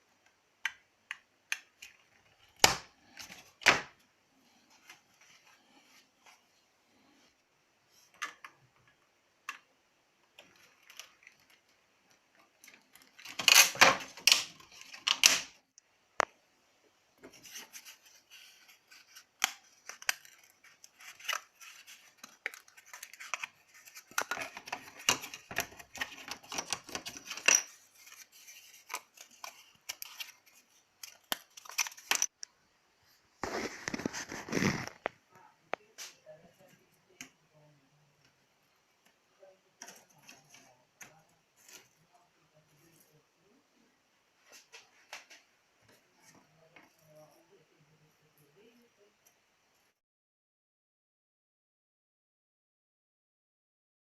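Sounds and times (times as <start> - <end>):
wooden parts clicking and scraping: 17.2 - 32.4.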